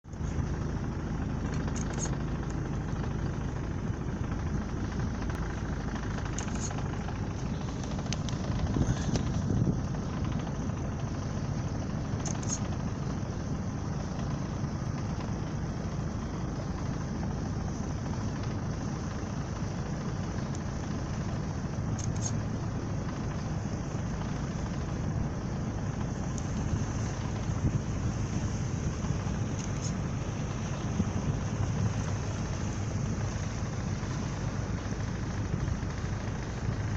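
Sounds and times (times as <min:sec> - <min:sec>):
boat engine low rumble: 0:00.0 - 0:36.9.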